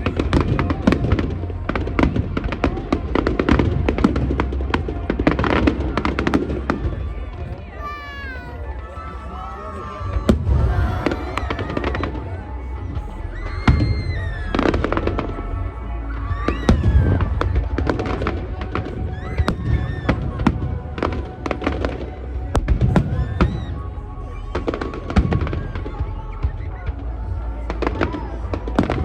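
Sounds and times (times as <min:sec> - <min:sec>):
loud music with singing: 0:03.2 - 0:29.0
fireworks bangs and crackling: 0:09.7 - 0:13.0.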